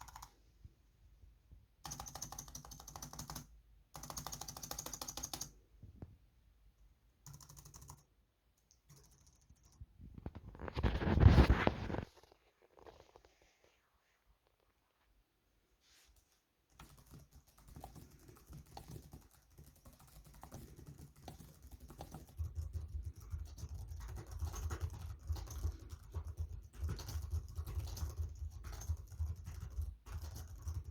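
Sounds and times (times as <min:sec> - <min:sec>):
keyboard keys clicking: 0:00.0 - 0:00.3, 0:01.9 - 0:05.5.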